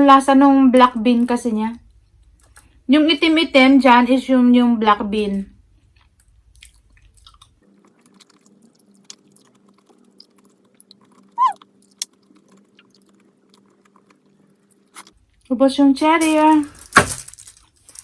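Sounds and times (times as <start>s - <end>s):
person chewing: 5.9s - 15.2s.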